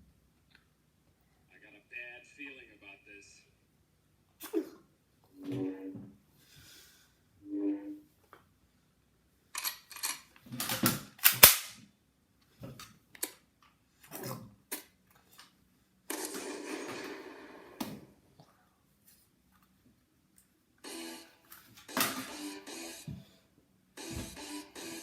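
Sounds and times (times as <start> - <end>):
sharp bangs: 16.1 - 18.2.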